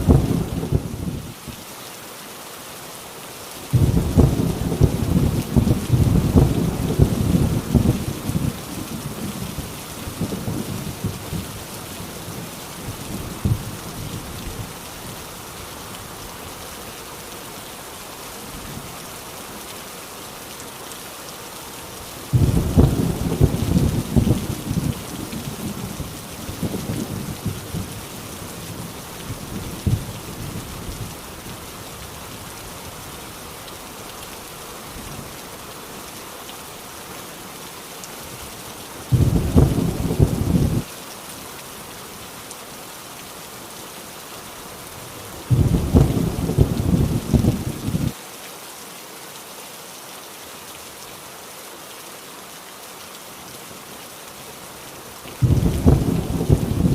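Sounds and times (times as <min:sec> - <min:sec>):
thunder rumbling: 0:00.0 - 0:01.3, 0:03.8 - 0:11.6, 0:22.3 - 0:31.1, 0:39.1 - 0:40.8, 0:45.5 - 0:48.1, 0:55.4 - 0:56.9
heavy rain: 0:00.0 - 0:56.9.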